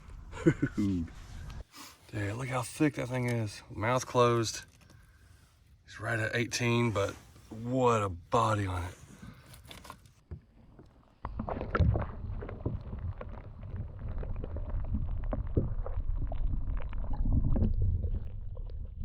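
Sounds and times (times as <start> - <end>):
steady low rumble: 12.0 - 19.0.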